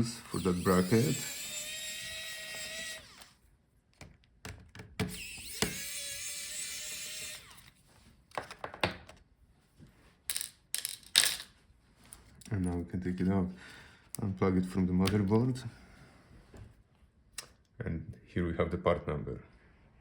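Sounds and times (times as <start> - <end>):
electric screwdriver whine: 0.0 - 3.4, 5.0 - 7.8.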